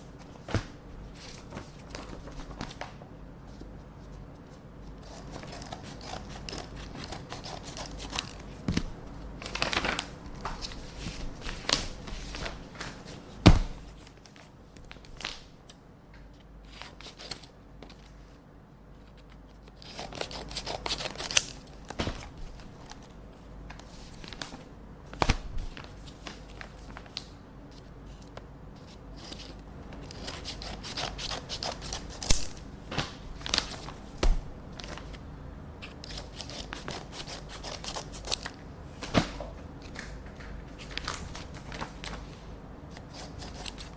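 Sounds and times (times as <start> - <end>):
paper rustling and scraping: 0.2 - 15.3
scissors snipping paper: 5.0 - 8.8, 19.8 - 22.3, 29.2 - 32.6, 35.8 - 38.6, 42.9 - 43.9.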